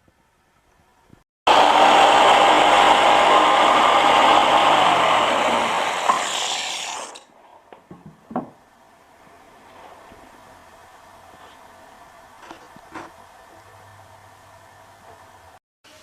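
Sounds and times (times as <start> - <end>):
small electric motor running: 1.5 - 7.2.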